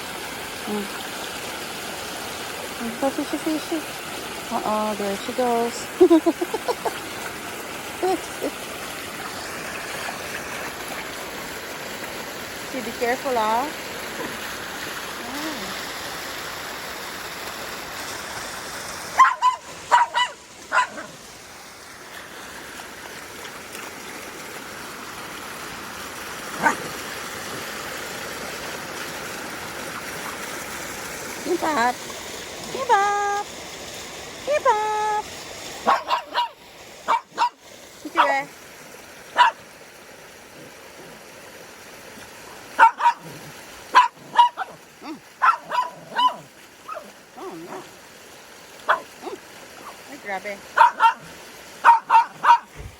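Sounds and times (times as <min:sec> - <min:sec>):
stream water rushing: 0:00.0 - 0:52.9
dog barking: 0:19.2 - 0:21.2, 0:26.6 - 0:26.9, 0:35.8 - 0:37.6, 0:39.4 - 0:39.6, 0:42.8 - 0:47.9, 0:48.9 - 0:49.4, 0:50.8 - 0:52.8.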